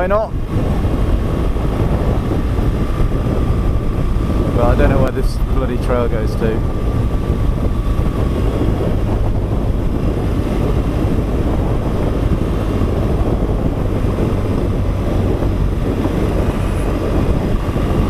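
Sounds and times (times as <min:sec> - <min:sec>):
motorcycle engine running: 0:00.0 - 0:18.0
wind on microphone: 0:00.0 - 0:18.0.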